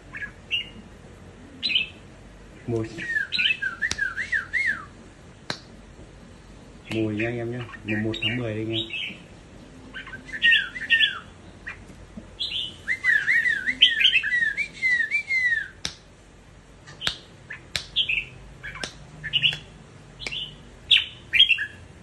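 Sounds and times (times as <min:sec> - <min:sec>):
bird singing whistled notes: 0:03.0 - 0:04.9, 0:10.0 - 0:11.3, 0:12.4 - 0:15.8, 0:18.0 - 0:21.8
bird sharp calls: 0:17.0 - 0:21.8.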